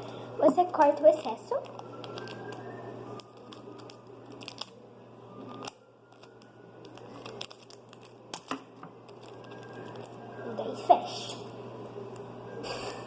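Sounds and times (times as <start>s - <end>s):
paper crinkling: 0.8s - 4.8s, 5.4s - 10.2s.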